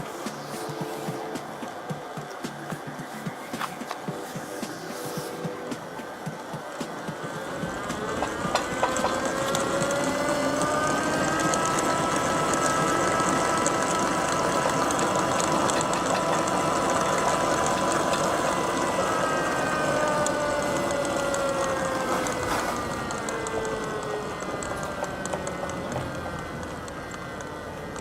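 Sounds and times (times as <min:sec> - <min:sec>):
electric mixer motor whine: 0:05.7 - 0:28.0.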